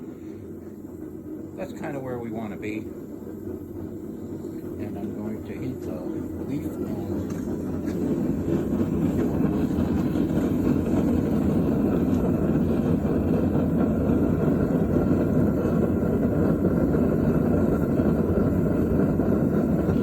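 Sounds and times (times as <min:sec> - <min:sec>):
forge rushing noise: 0:00.0 - 0:20.0.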